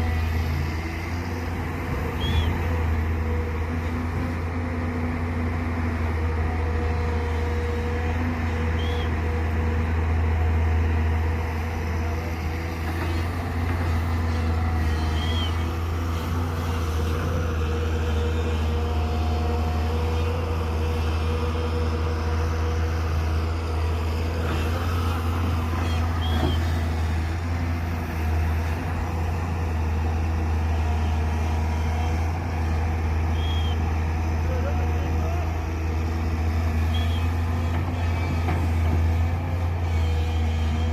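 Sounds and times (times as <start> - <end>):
excavator diesel engine droning: 0.0 - 40.9.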